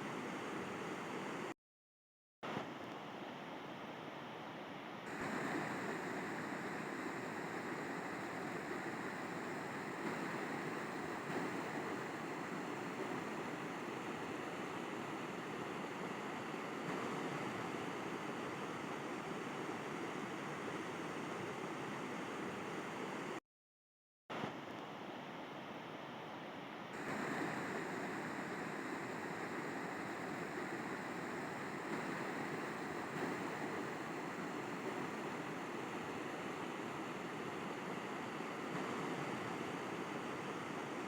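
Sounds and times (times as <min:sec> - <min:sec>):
river water rushing: 0:05.1 - 0:18.3, 0:27.0 - 0:41.0.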